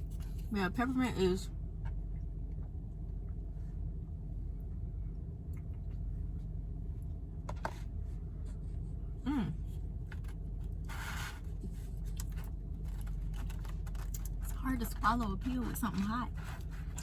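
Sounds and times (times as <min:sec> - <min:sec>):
steady low hum: 0:00.0 - 0:17.0
person humming mm: 0:09.2 - 0:09.7.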